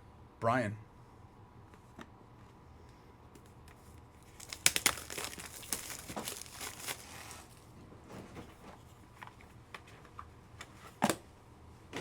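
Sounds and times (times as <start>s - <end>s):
plastic wrapper crinkling and tearing: 4.2s - 7.6s
loud plastic snaps: 4.3s - 7.4s.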